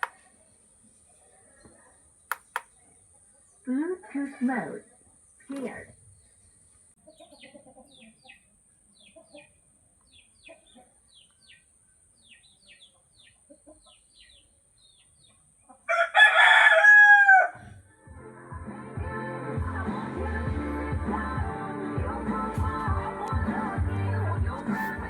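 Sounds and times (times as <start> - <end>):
faint bird chirps: 0.0 - 15.8
rooster crowing: 15.9 - 17.8.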